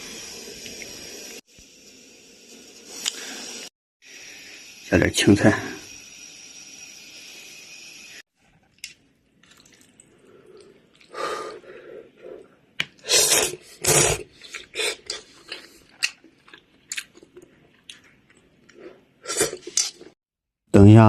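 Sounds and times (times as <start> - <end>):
steady hiss: 0.0 - 8.2
chewing and mouth noises: 8.7 - 11.2, 14.3 - 20.1.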